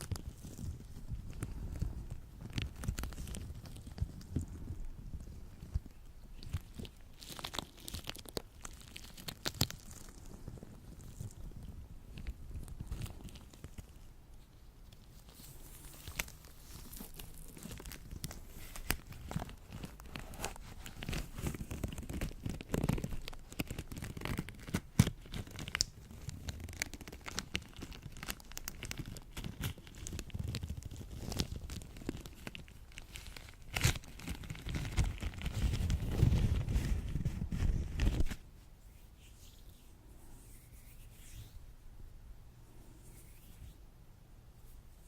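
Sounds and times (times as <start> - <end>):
gloved hands crackling sticky lotion: 0.0 - 41.6.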